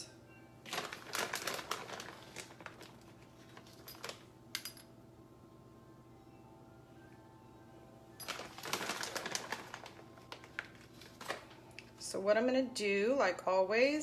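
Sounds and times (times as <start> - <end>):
shredded cheese crinkling: 0.7 - 4.2, 8.3 - 11.9.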